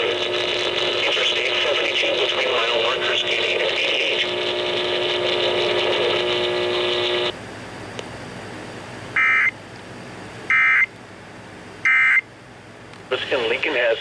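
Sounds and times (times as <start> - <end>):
broadcast audio: 0.0 - 7.4, 13.1 - 14.0.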